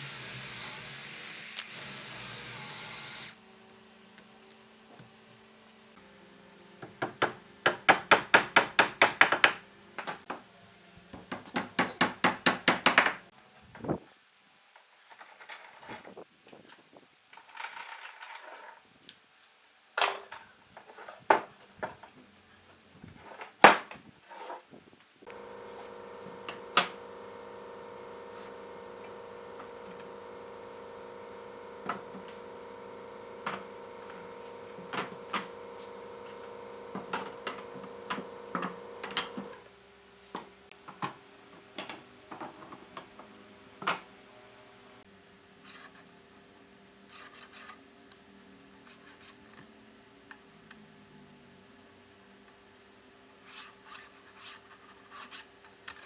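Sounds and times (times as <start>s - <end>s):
wood knocking and tapping: 6.8s - 9.6s, 11.2s - 13.2s
machine hum: 25.3s - 39.6s.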